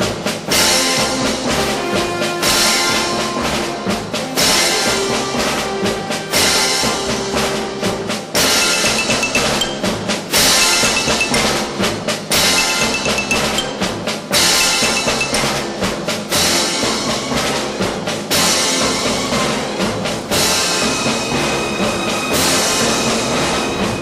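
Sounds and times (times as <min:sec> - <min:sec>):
background music drum beat: 0:00.0 - 0:24.0.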